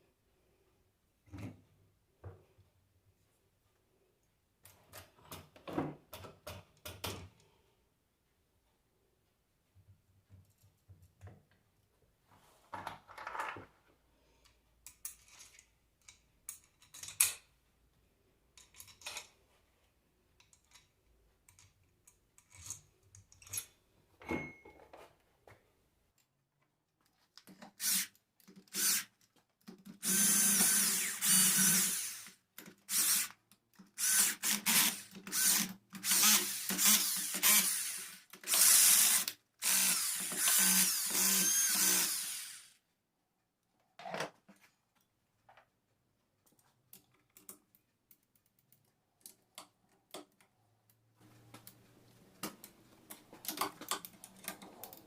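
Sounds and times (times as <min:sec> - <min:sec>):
small metal parts clicking: 0:14.8 - 0:17.4, 0:18.6 - 0:19.4, 0:21.5 - 0:23.8
power drill-driver bursts: 0:27.8 - 0:29.1, 0:30.0 - 0:33.3, 0:34.0 - 0:42.8.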